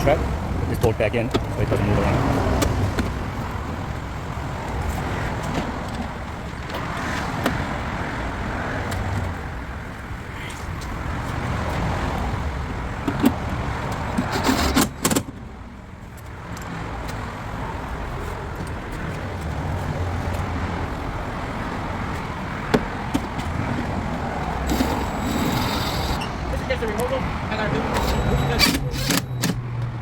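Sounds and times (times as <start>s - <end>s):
road traffic: 0.0s - 30.0s
tools clicking on metal parts: 27.9s - 29.6s.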